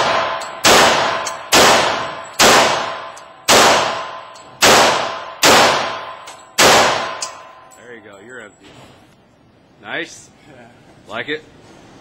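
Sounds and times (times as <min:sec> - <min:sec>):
pistol shots with echo: 0:00.0 - 0:07.6.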